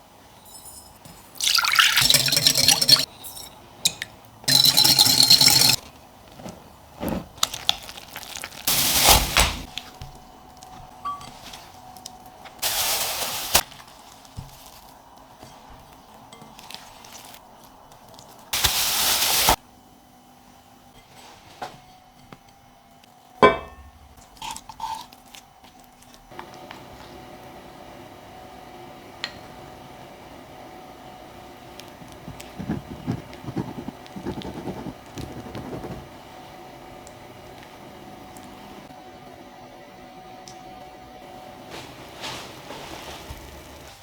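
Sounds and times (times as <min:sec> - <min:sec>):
liquid pouring into a bowl: 0:01.4 - 0:03.1.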